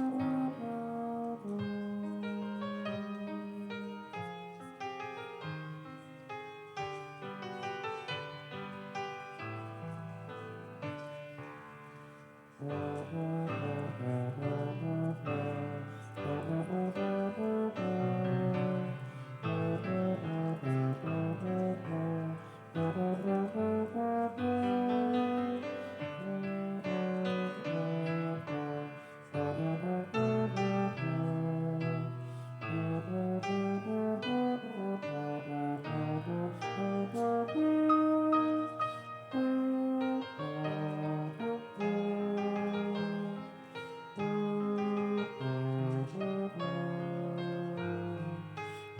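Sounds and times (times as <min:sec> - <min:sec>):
piano accompaniment: 0:00.0 - 0:48.9
slow brass melody: 0:00.0 - 0:48.9.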